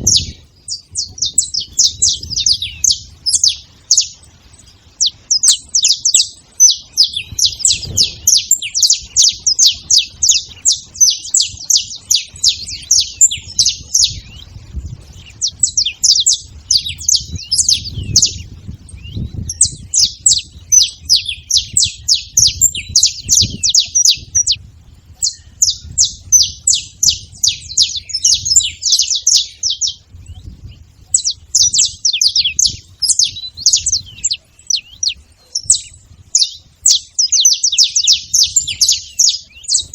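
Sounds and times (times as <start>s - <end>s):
finches chipping: 0.0s - 14.4s.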